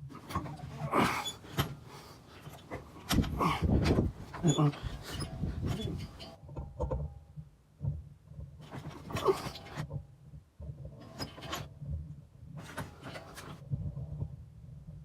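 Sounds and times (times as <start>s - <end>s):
scrapes and clunks of mower parts: 0.1s - 7.2s, 8.6s - 10.0s, 10.8s - 14.3s.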